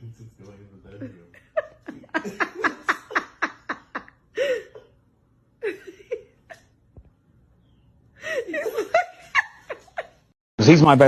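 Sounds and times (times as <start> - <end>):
person laughing: 1.0 - 5.0.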